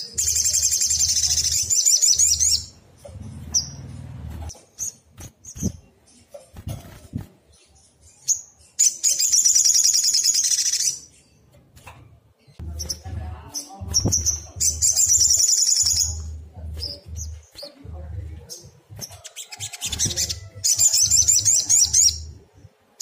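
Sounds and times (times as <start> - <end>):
sunbird trilling song: 0.0 - 4.1, 12.6 - 17.8
bird chirps: 0.0 - 11.5, 12.4 - 17.9.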